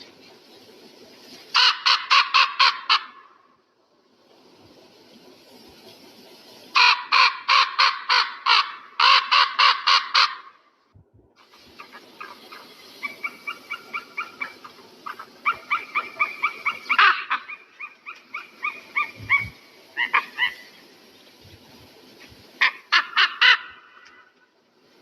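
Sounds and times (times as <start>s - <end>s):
eagle yelping calls: 1.6s - 3.3s, 6.8s - 10.6s, 11.6s - 20.8s, 22.6s - 24.2s.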